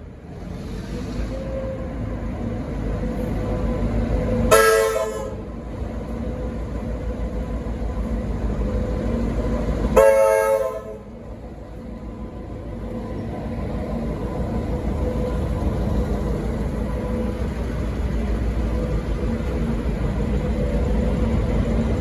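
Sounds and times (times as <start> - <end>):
locomotive air horn blasts: 4.5 - 5.5, 10.0 - 11.1.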